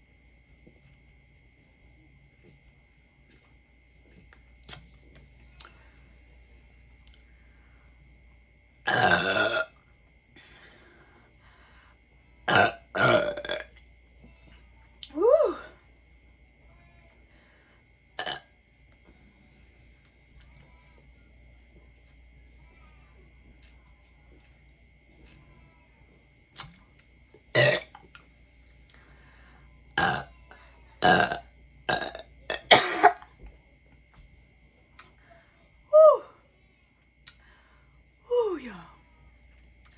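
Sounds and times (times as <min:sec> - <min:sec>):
woman belching: 0:08.9 - 0:09.7, 0:12.5 - 0:13.8, 0:18.2 - 0:18.5, 0:27.5 - 0:28.0, 0:30.0 - 0:30.3, 0:31.0 - 0:33.2
woman burping loudly: 0:08.9 - 0:09.7, 0:12.5 - 0:13.8, 0:18.2 - 0:18.5, 0:27.5 - 0:28.0, 0:30.0 - 0:30.3, 0:31.0 - 0:33.2.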